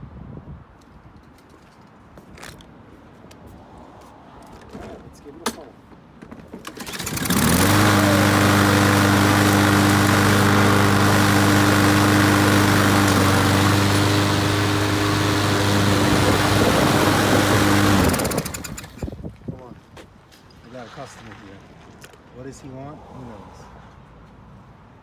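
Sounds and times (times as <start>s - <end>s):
lawn mower engine running: 6.7s - 19.1s.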